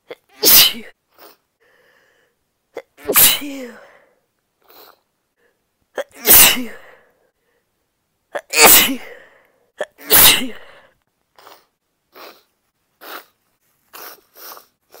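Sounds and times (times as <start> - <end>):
woman sneezing: 0.3 - 1.0, 2.8 - 4.0, 6.0 - 7.0, 8.4 - 10.8
sniffles: 4.6 - 5.1, 11.4 - 15.0.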